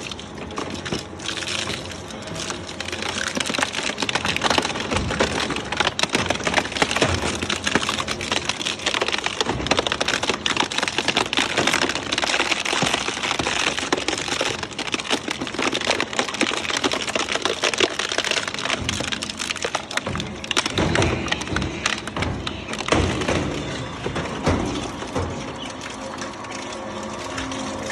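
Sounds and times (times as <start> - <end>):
shredding machine crackling: 0.0 - 27.9.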